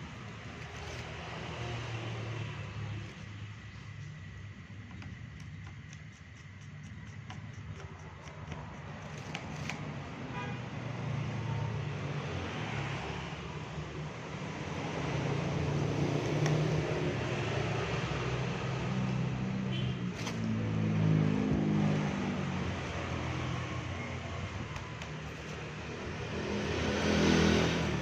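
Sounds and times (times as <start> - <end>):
vehicle engine rumble: 10.8 - 28.0.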